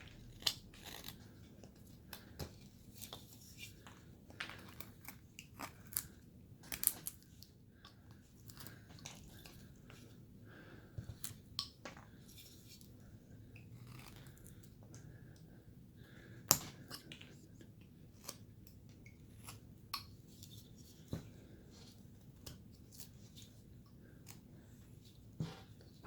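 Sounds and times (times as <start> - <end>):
knife carving wood: 0.0 - 7.4, 13.6 - 14.7, 18.1 - 21.2.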